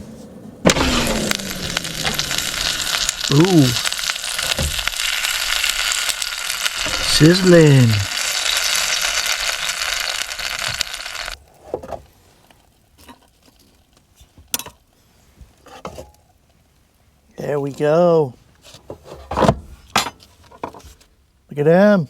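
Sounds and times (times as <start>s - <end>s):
food frying sizzle: 0.7s - 11.4s.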